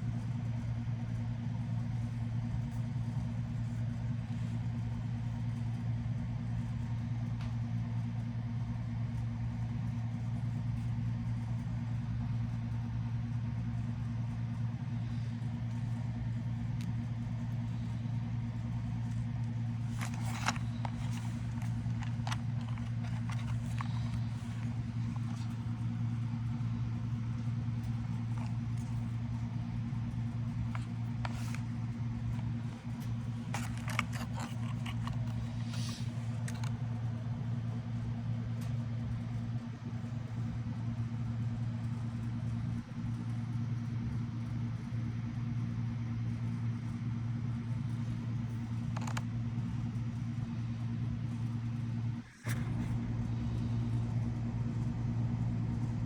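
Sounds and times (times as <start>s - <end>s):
steady low hum: 0.0s - 56.0s
sharp clicks and crackles: 19.8s - 25.9s, 26.5s - 29.5s, 30.5s - 36.8s, 48.8s - 49.2s.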